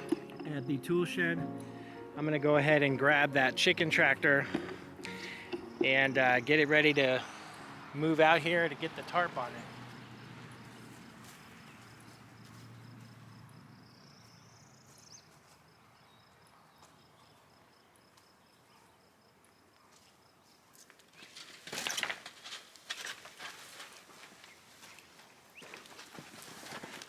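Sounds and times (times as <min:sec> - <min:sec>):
faint insect-like whine: 0:09.6 - 0:22.0.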